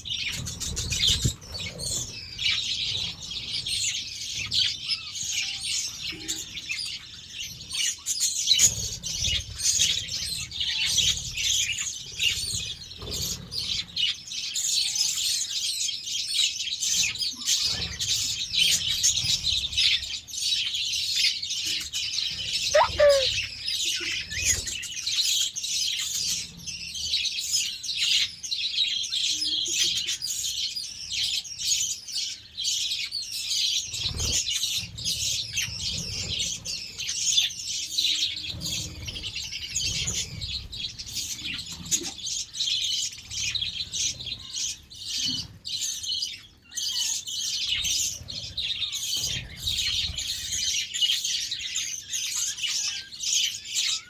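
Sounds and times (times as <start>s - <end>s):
budgerigars chattering: 22.0s - 24.6s.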